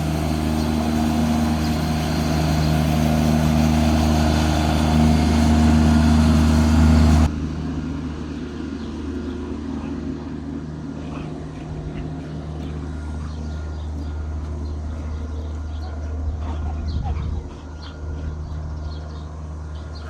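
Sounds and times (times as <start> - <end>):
low motor hum: 0.0 - 20.0
dogs barking and yelping: 10.9 - 13.5, 15.5 - 18.3.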